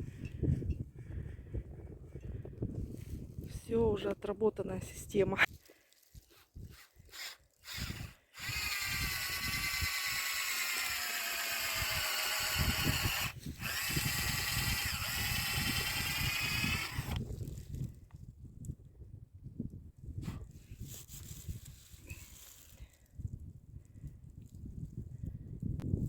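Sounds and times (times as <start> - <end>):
cordless drill boring into wood: 6.3 - 17.2.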